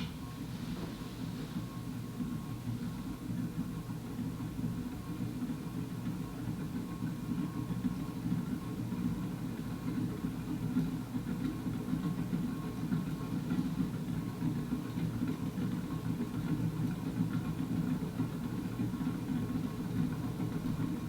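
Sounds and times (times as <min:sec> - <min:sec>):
ceiling fan motor humming: 0:00.0 - 0:02.4.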